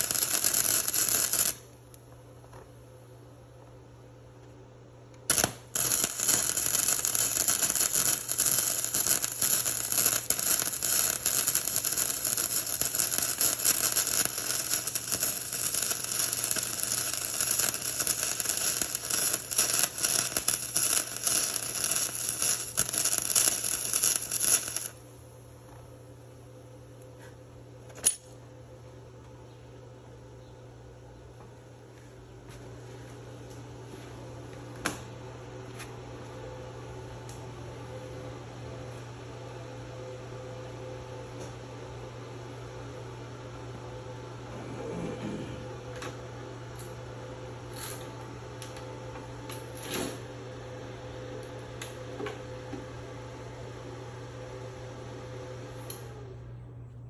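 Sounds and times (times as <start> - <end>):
welder arc crackling: 0.0 - 2.0, 5.2 - 25.3.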